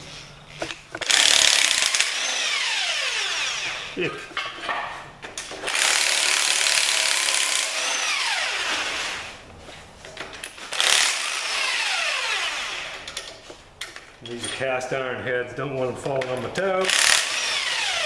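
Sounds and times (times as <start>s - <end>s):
power tool whining down: 1.0s - 4.0s, 5.6s - 9.4s, 10.7s - 13.2s, 16.9s - 18.0s.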